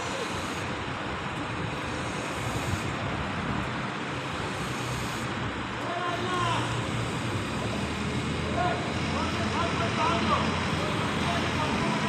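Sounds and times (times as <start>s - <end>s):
construction machinery engine rumble: 5.3s - 12.0s.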